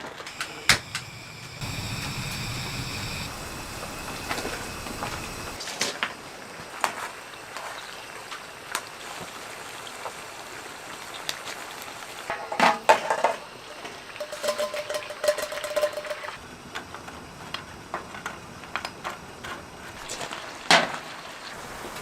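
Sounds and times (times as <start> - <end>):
rain patter: 0.0 - 12.3, 16.7 - 22.0
cookware clinking and knocking: 14.2 - 16.3.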